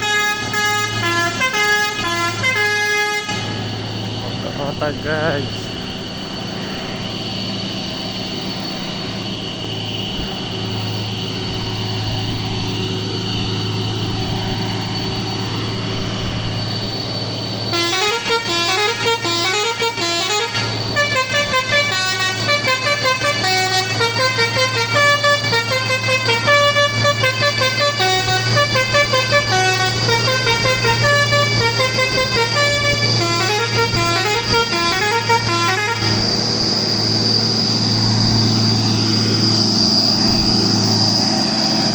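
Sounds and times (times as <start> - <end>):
musical horn playing a tune: 0.0 - 5.8, 17.6 - 39.5
diesel truck engine under load: 0.0 - 41.9.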